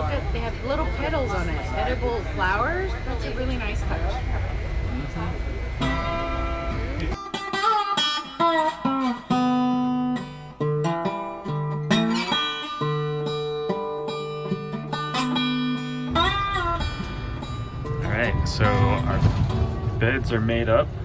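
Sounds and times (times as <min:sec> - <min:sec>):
plucked acoustic guitar melody: 0:05.8 - 0:21.0.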